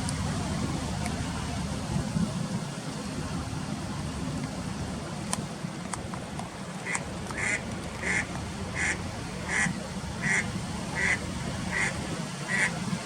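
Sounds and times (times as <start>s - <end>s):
duck quacking: 6.8s - 12.8s.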